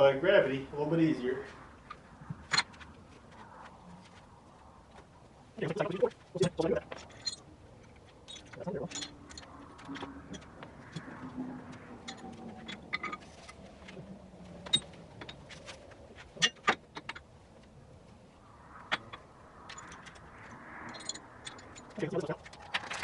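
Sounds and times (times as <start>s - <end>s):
chain hardware clinking: 20.8s - 23.0s.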